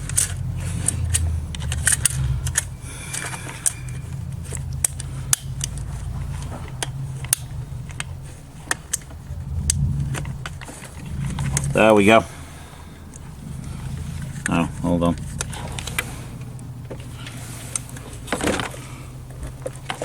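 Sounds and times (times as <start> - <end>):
metal parts clicking and tapping: 0.0 - 8.1
steady low hum: 0.0 - 20.0.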